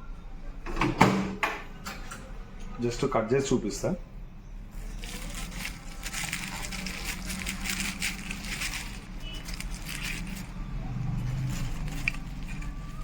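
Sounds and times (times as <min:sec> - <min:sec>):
pastry crust crunching: 0:04.7 - 0:13.0.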